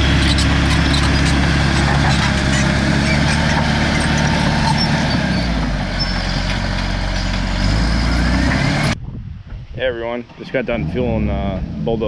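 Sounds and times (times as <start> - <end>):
bulldozer diesel engine running: 0.0 - 9.0.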